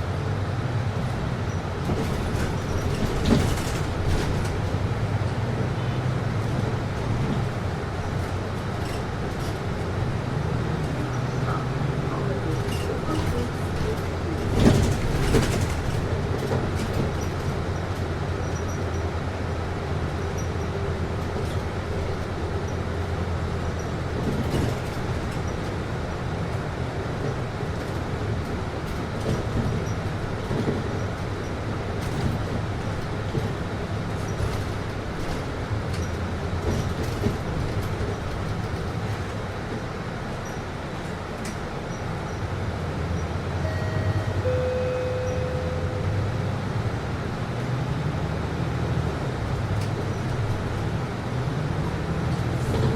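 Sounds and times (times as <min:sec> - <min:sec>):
bus engine drone: 0:00.0 - 0:52.9
rattles and knocks: 0:01.8 - 0:04.8, 0:10.8 - 0:19.0, 0:23.7 - 0:41.6.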